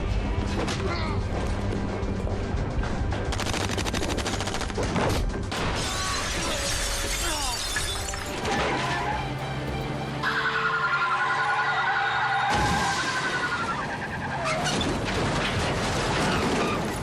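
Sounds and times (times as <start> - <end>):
dramatic score music: 0.0 - 12.6
sharp cracks and crashes: 12.5 - 17.0.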